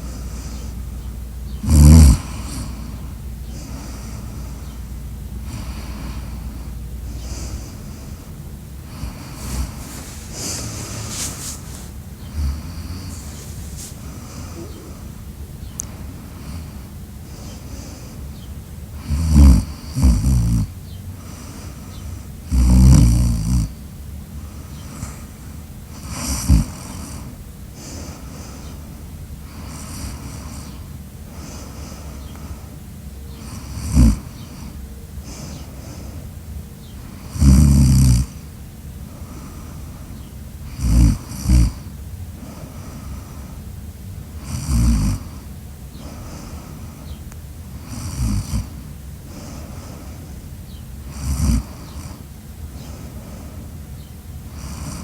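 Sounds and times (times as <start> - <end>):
low background noise: 0.0 - 55.0
loud snoring: 1.6 - 4.8, 5.4 - 7.7, 8.8 - 15.2, 19.0 - 21.7, 22.4 - 23.8, 26.0 - 27.4, 29.5 - 30.8, 33.4 - 36.0, 37.1 - 38.4, 40.7 - 42.7, 44.4 - 45.4, 47.8 - 50.1, 51.0 - 53.5, 54.5 - 55.0.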